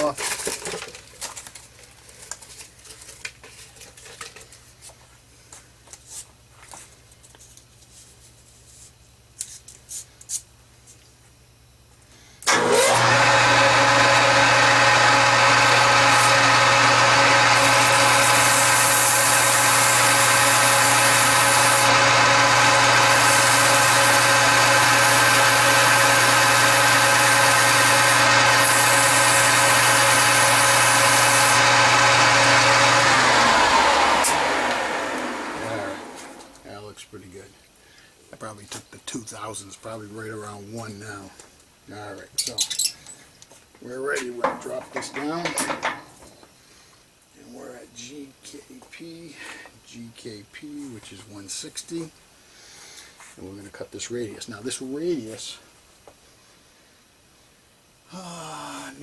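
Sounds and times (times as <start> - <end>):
metal lathe running with gear whine: 12.5 - 36.6.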